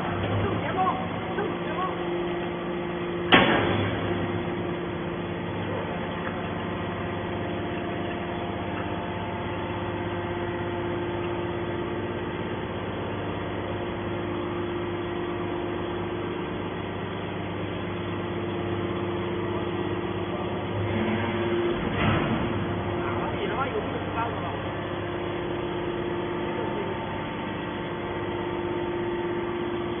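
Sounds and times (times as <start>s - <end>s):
can baler machine hum: 0.0s - 30.0s.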